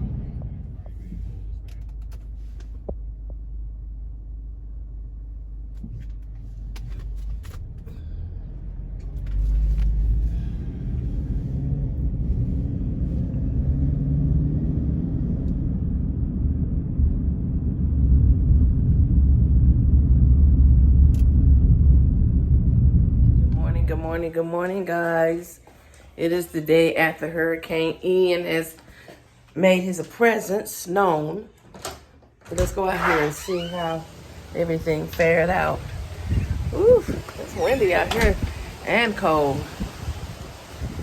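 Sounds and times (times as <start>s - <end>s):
low steady rumble: 0.0s - 28.6s, 32.4s - 41.0s.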